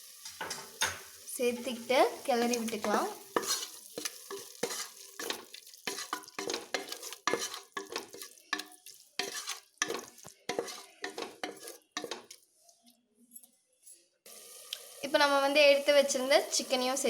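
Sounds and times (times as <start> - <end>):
food sizzling: 0.0 - 12.5, 14.3 - 17.0
ladle scraping metal pot: 2.7 - 12.4.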